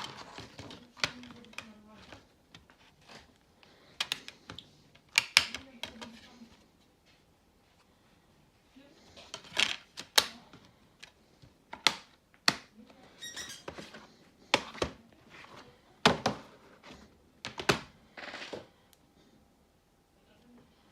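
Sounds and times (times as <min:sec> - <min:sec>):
plastic cases clicking and knocking: 0:03.9 - 0:06.2, 0:09.3 - 0:12.7, 0:16.0 - 0:16.6, 0:17.4 - 0:18.6.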